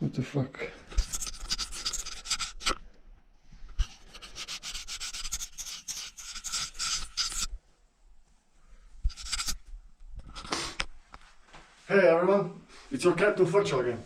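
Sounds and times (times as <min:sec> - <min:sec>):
scratching or rubbing strokes: 0:00.9 - 0:02.8, 0:03.6 - 0:07.6, 0:09.0 - 0:11.9.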